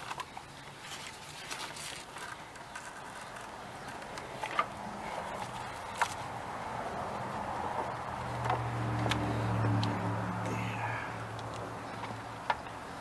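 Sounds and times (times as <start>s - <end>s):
belt clicking on engine pulleys: 0.0s - 6.3s, 7.7s - 10.0s.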